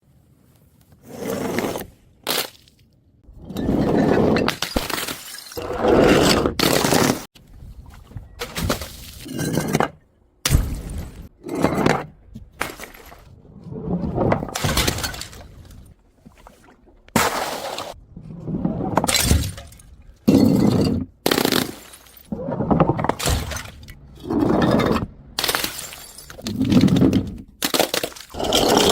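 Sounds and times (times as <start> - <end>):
glass bottles smashing: 3.6 - 5.7, 24.8 - 28.9.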